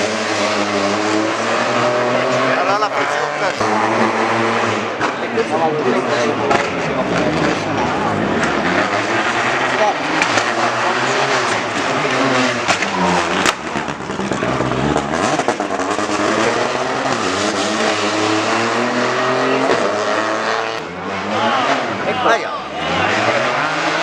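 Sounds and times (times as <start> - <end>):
rally car engine revving: 0.0 - 24.0
sharp cracks: 12.6 - 14.4.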